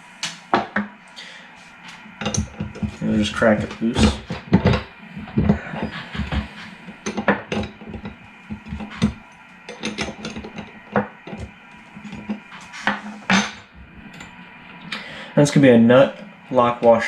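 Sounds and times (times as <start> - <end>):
metal parts knocking: 2.2 - 14.9.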